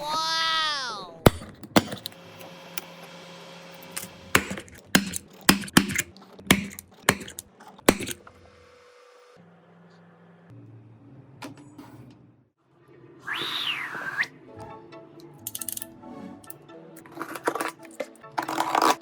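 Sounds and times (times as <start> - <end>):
hard objects clicking and tapping: 1.3 - 2.2, 3.8 - 8.4.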